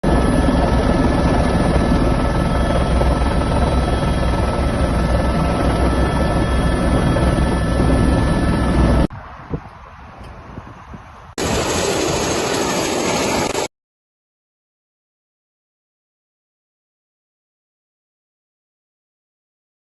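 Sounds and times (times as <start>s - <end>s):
helicopter rotor and turbine: 0.0s - 13.7s.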